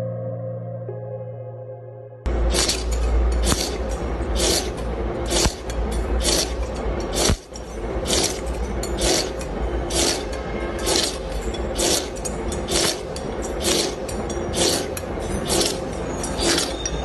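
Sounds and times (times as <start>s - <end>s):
steady low hum: 1.6s - 17.0s
rhythmic scraping strokes: 2.3s - 17.0s.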